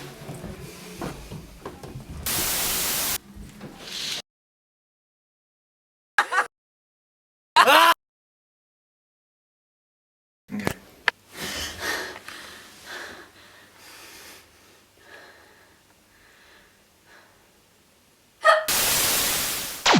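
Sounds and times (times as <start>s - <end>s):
breathy puffs and sniffs: 3.8s - 4.2s.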